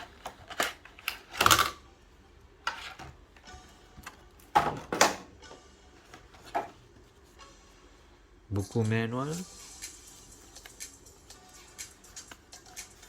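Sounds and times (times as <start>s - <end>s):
plastic pieces clacking: 0.0s - 1.8s.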